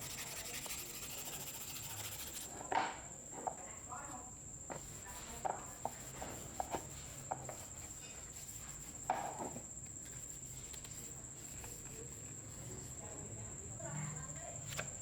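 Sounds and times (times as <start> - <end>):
cricket trill: 0.0 - 2.5.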